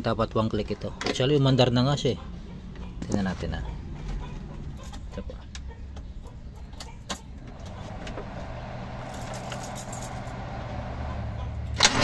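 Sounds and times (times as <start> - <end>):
petrol engine idling: 3.7 - 12.0.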